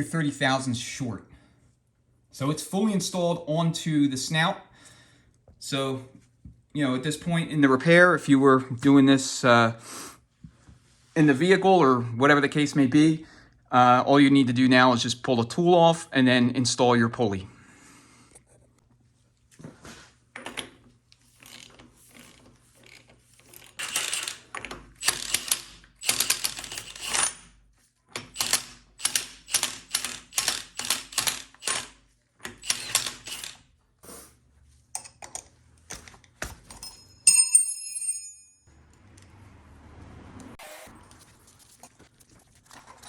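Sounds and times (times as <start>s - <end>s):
ratchet strokes: 32.6s - 33.6s
metal clinking: 36.7s - 39.3s.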